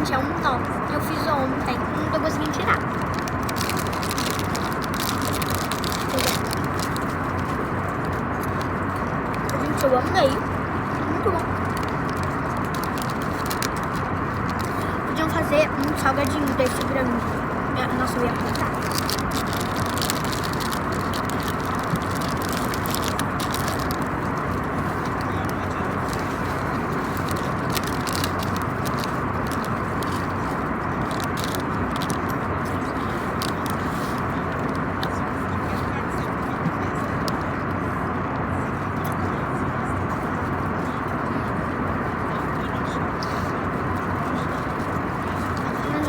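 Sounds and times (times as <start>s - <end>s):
airliner cabin roar: 0.0s - 46.0s
jet engines and airflow rushing: 0.0s - 46.0s
short crackles: 1.1s - 34.4s.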